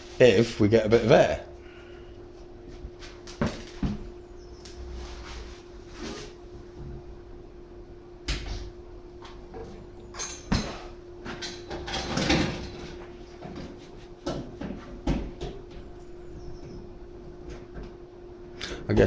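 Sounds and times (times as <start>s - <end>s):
steady low hum: 0.0s - 19.0s
knocks and clattering: 9.6s - 15.9s.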